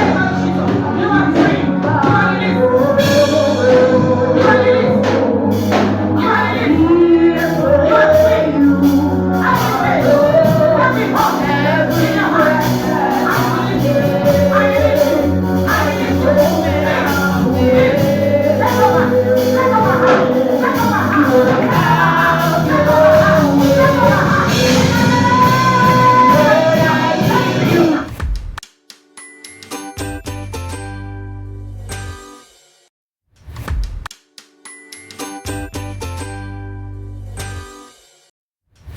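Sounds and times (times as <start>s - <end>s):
person singing: 0.0s - 28.1s
sustained bass notes: 0.0s - 28.2s, 30.3s - 32.2s.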